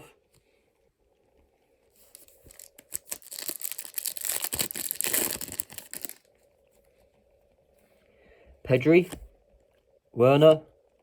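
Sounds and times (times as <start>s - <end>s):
foil wrapper tearing and crinkling: 2.1s - 6.3s.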